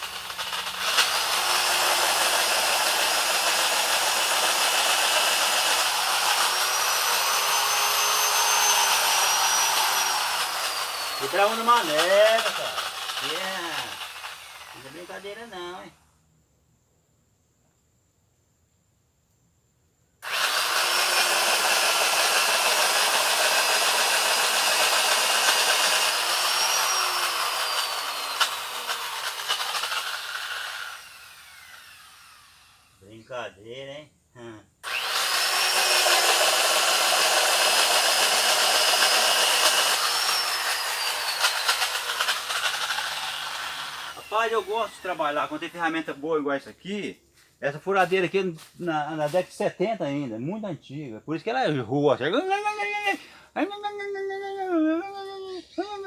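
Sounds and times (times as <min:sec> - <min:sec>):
electric drill boring into wood: 0:00.0 - 0:15.8, 0:20.2 - 0:33.0, 0:34.8 - 0:46.1.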